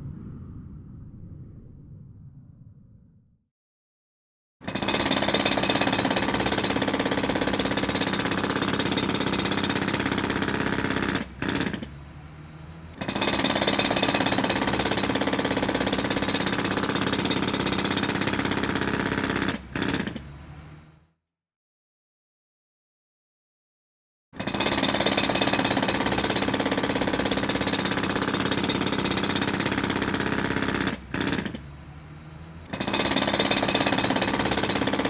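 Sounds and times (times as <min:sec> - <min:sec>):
electric jackhammer hammering: 0:04.8 - 0:12.0, 0:13.0 - 0:20.3, 0:24.4 - 0:31.7, 0:32.4 - 0:35.0.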